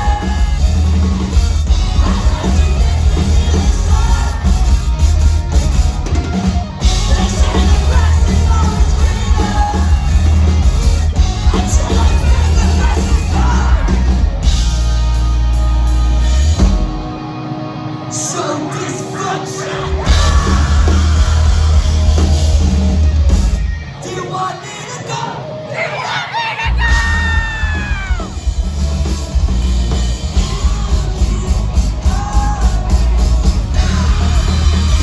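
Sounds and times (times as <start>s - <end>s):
person singing: 0.0s - 5.0s, 6.8s - 14.4s, 30.2s - 35.0s
live rock band playing: 0.0s - 35.0s
person yelling: 25.7s - 28.4s.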